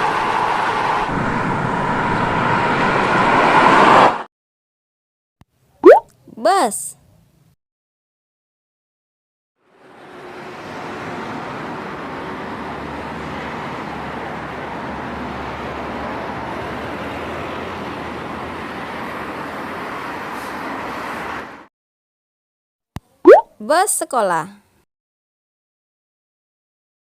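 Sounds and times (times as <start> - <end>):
road noise: 0.0 - 4.2, 9.6 - 21.7
bus engine running: 9.6 - 21.6.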